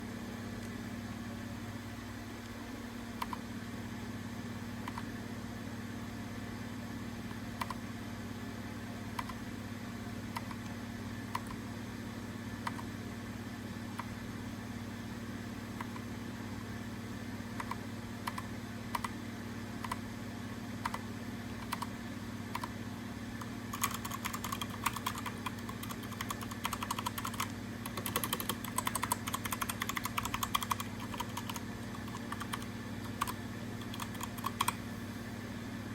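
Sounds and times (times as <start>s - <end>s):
steady low hum: 0.0s - 35.9s
mechanical keyboard typing: 9.2s - 9.4s, 17.6s - 19.2s, 21.6s - 21.9s, 22.5s - 22.7s, 23.4s - 34.8s.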